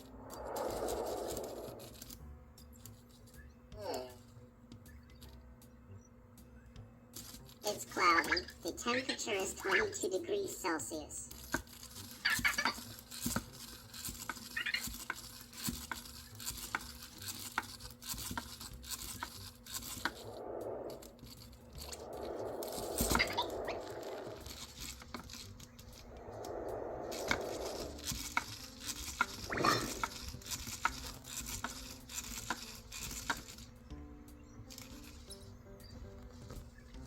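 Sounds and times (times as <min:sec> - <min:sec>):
soft robot whirs: 0:00.0 - 0:04.2, 0:11.3 - 0:33.9.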